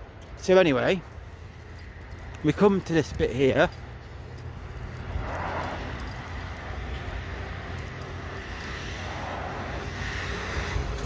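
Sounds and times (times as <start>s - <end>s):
road traffic passing: 0.0s - 11.0s
wind rumble on microphone: 8.6s - 11.0s.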